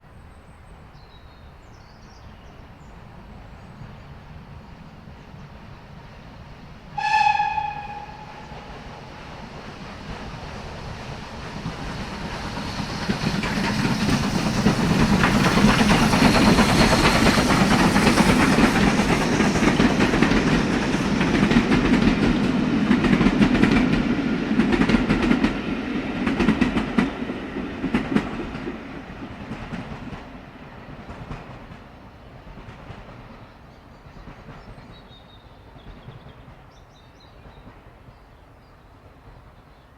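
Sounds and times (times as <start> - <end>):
train rumbling past: 0.0 - 39.9
train horn blast: 7.0 - 9.2
wheels clacking over rail joints: 11.3 - 25.6.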